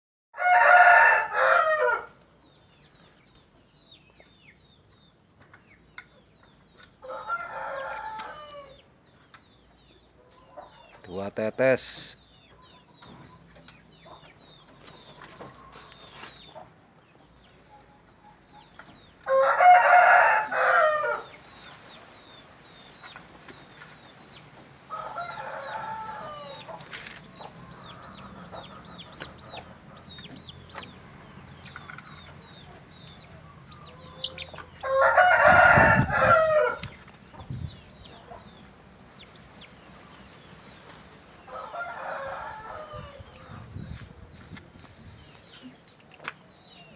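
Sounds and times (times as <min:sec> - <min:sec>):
rooster crowing: 0:00.4 - 0:02.2, 0:07.0 - 0:08.8, 0:19.3 - 0:21.3, 0:24.9 - 0:26.7, 0:34.8 - 0:36.9, 0:41.5 - 0:43.3.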